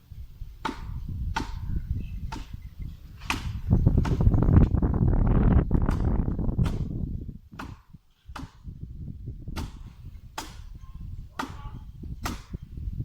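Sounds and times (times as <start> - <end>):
chopping blows into wood: 0.6 - 2.6, 3.2 - 4.8, 5.8 - 8.7, 9.5 - 12.6.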